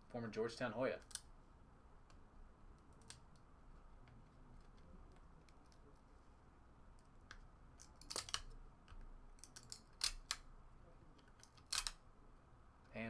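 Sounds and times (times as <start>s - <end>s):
trading cards swishing and snapping: 7.0s - 8.6s, 11.2s - 12.0s.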